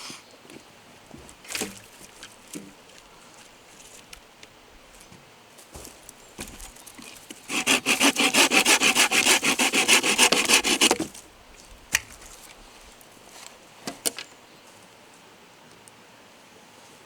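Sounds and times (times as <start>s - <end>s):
hand saw cutting wood: 6.4s - 11.2s.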